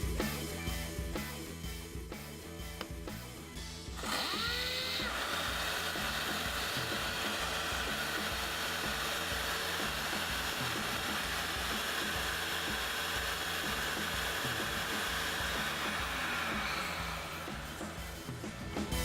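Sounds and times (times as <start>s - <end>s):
background music with low beat: 0.0s - 19.0s
vacuum cleaner running: 3.9s - 19.0s.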